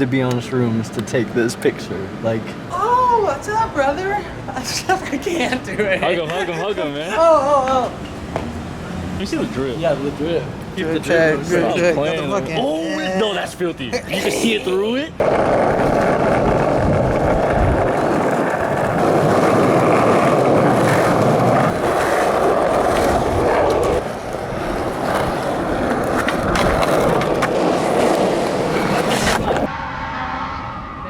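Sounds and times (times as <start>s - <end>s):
skateboard clacks: 15.2s - 29.7s
skateboard wheels rumbling: 15.2s - 29.7s.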